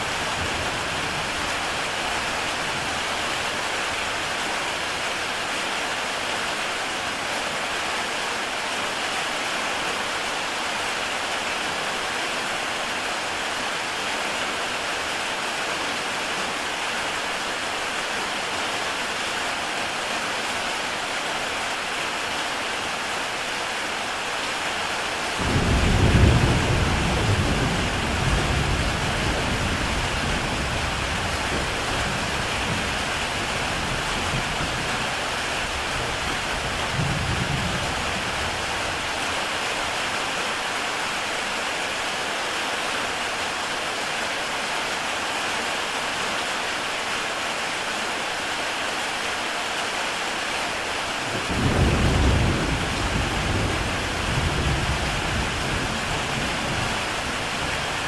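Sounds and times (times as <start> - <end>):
heavy rain on a tile roof: 0.0 - 58.0
thunder clap and rumble: 25.4 - 34.9.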